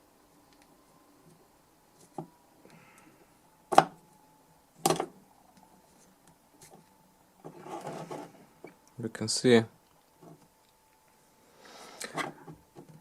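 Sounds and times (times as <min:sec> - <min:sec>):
faint steady high tone: 0:00.0 - 0:06.1.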